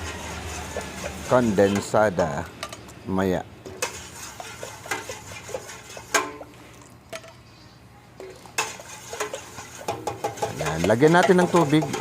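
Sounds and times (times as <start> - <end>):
spoon scraping: 0.0 - 2.8, 3.7 - 6.5, 8.2 - 12.0.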